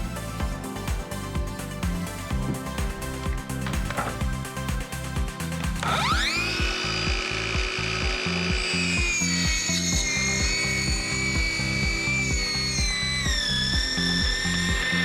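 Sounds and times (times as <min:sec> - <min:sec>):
music with steady beat: 0:00.0 - 0:15.0
power tool whining: 0:03.4 - 0:15.0.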